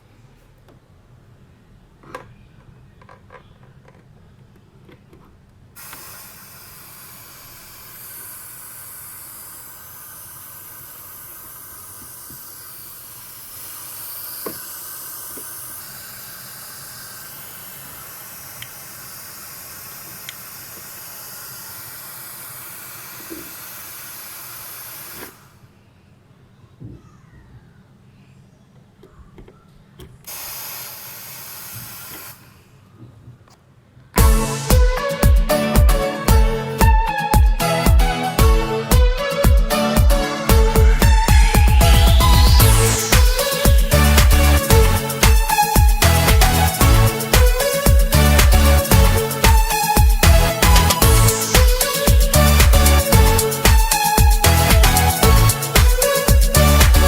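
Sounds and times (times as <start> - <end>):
speaker hiss: 5.7 - 25.8, 30.2 - 32.8, 34.2 - 57.0
low hum: 40.5 - 45.4.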